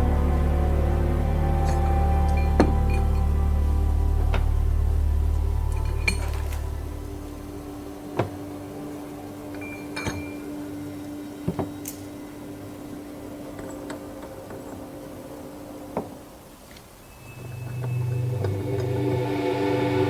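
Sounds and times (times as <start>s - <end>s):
faint steady hum: 0.0s - 20.0s
metal parts clinking and knocking: 5.7s - 6.7s.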